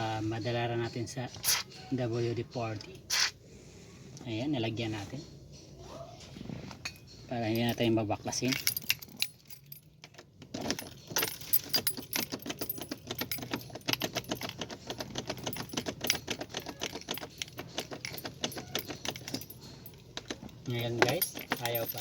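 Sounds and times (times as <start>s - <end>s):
keys jangling on a ring: 7.0s - 22.0s.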